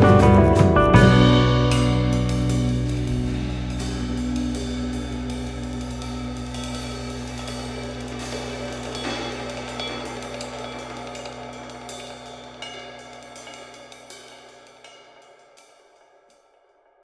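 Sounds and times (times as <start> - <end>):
sustained bass: 0.0 - 13.2
drums and cymbals: 0.0 - 17.0.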